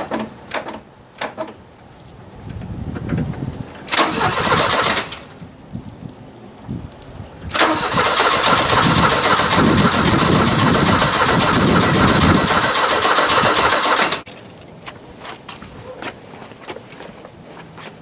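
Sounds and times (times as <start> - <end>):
car engine cranking: 3.8 - 5.4, 7.5 - 14.3.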